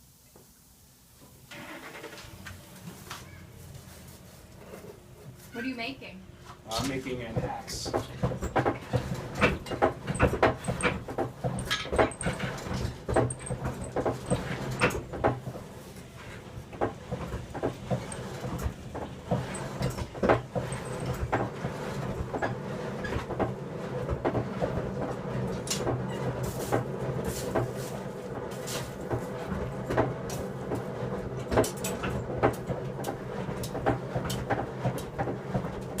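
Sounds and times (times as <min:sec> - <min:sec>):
metal tools knocking and clanking: 0:07.9 - 0:15.5, 0:16.8 - 0:23.4.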